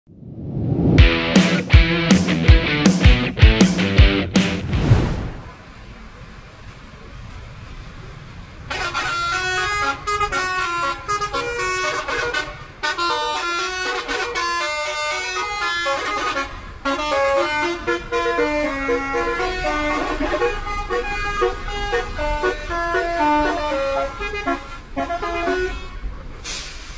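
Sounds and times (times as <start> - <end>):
bus air horns playing a tune: 8.7 - 26.9.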